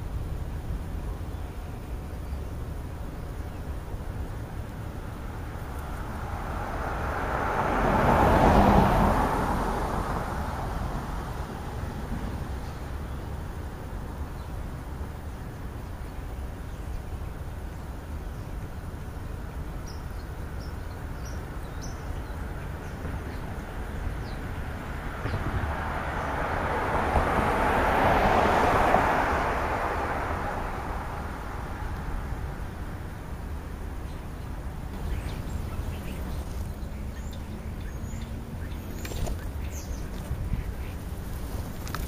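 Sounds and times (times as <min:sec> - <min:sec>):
vehicle passing by: 0:04.5 - 0:15.0, 0:22.2 - 0:42.0
low outdoor rumble: 0:28.7 - 0:42.0.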